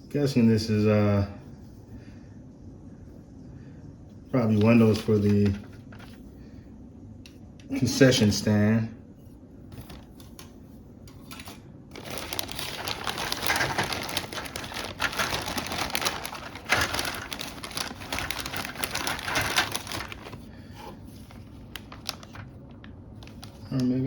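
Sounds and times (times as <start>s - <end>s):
plastic parts clicking: 11.1s - 20.4s
packaging crinkling: 11.3s - 20.5s, 21.2s - 23.9s.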